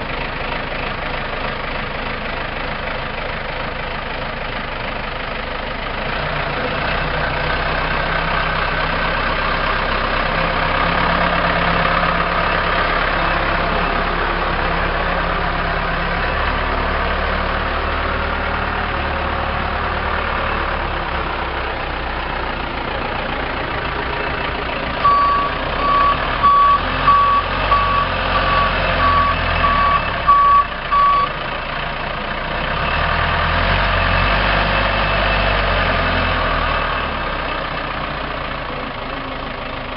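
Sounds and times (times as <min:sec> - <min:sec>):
diesel engine running: 0:00.0 - 0:39.9
reversing alarm beeping: 0:25.0 - 0:31.4.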